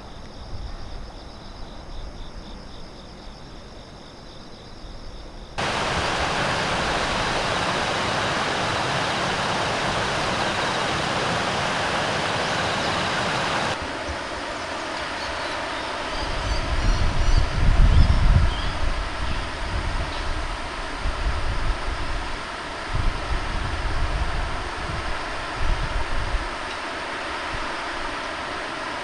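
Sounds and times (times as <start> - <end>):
river water rushing: 5.6 - 14.8.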